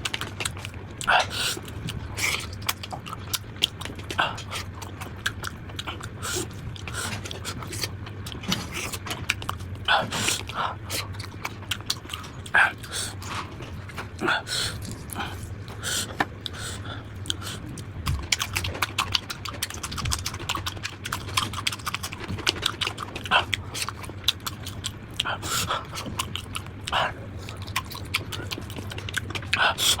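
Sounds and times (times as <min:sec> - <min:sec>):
crunchy chewing of fried chicken: 0:00.0 - 0:30.0
steady low hum: 0:00.0 - 0:30.0.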